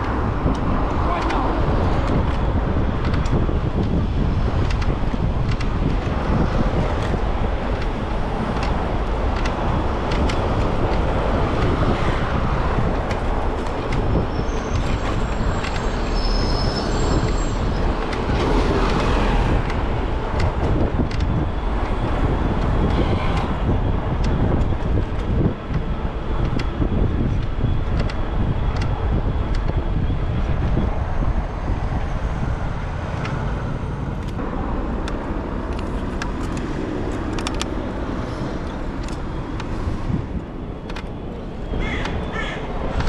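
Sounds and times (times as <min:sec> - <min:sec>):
bike rattles and knocks: 0:00.0 - 0:32.3
wind and road noise: 0:00.0 - 0:43.0.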